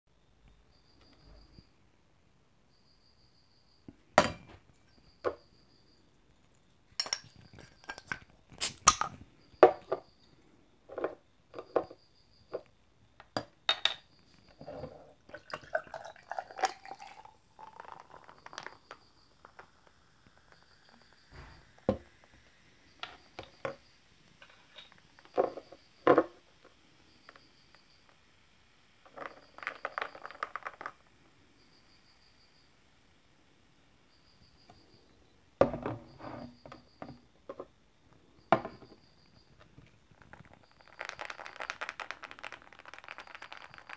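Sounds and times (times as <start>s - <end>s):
glass clinks and knocks: 4.2s - 4.6s, 7.0s - 8.2s, 13.4s - 17.2s
juice pouring into glass: 14.5s - 22.4s, 40.1s - 43.9s.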